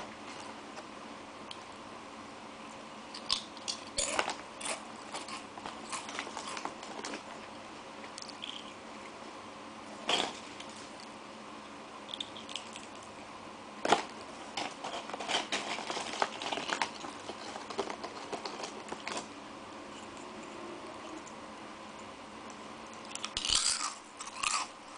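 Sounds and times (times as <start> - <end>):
snack crinkling and clicking: 3.1 - 8.8, 12.1 - 13.1, 13.9 - 19.3, 22.5 - 24.7.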